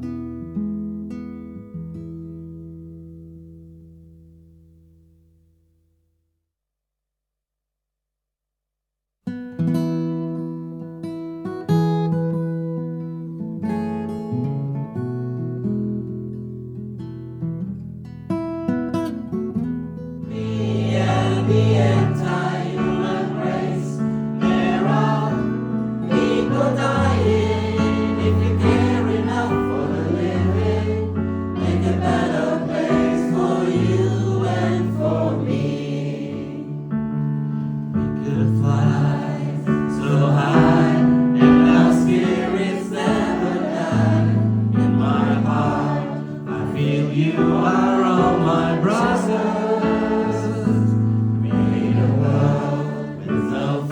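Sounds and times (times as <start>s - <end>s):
acoustic guitar: 0.0s - 5.9s, 9.2s - 53.9s
group of people singing: 20.3s - 36.9s, 38.2s - 53.9s.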